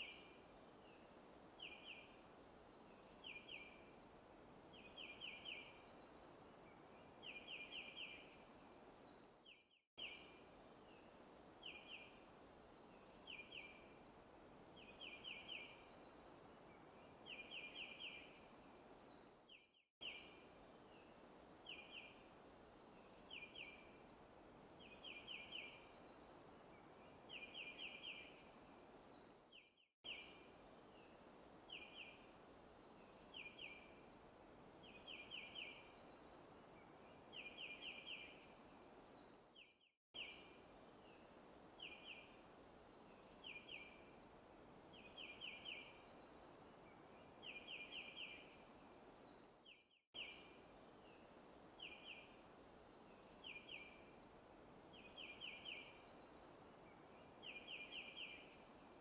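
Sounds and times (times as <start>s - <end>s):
soft steady hiss: 0.0s - 59.0s.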